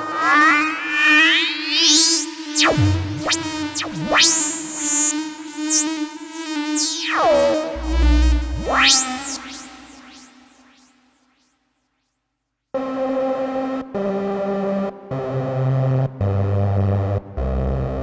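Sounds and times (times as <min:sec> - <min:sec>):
synthesizer sweeping pitch glides: 0:00.6 - 0:10.6
deep synth bass note: 0:02.6 - 0:05.0, 0:07.3 - 0:09.8.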